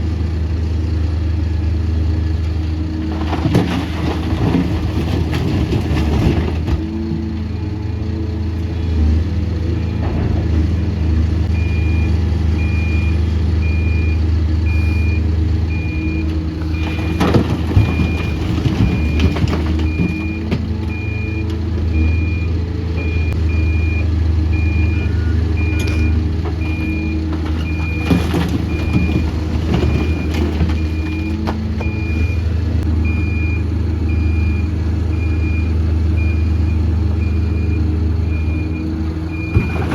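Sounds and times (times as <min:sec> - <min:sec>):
diesel machinery running: 0:00.0 - 0:39.9
reversing alarm beeping: 0:11.5 - 0:39.9
knocks and clanks: 0:16.4 - 0:22.0, 0:25.6 - 0:32.2, 0:39.3 - 0:39.9.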